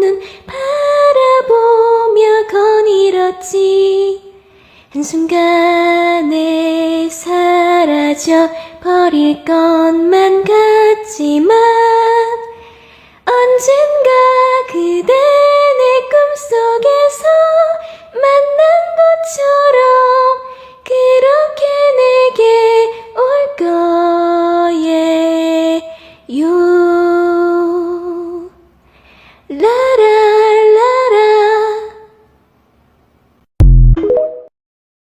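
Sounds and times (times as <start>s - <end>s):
woman singing slow song: 0.0s - 28.7s, 29.5s - 32.3s.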